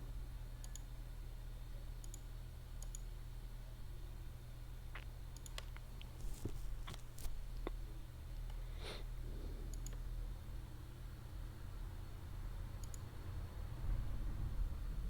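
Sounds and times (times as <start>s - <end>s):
steady low hum: 0.0s - 15.0s
mouse and keyboard clicks: 5.4s - 7.2s, 12.8s - 13.0s.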